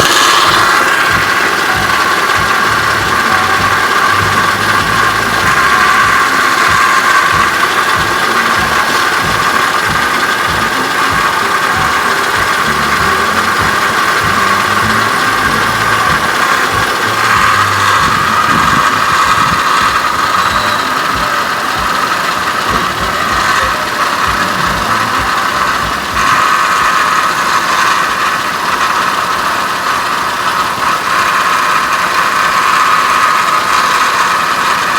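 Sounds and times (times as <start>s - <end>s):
car engine running: 0.0s - 34.9s
steady engine whine: 0.0s - 34.9s.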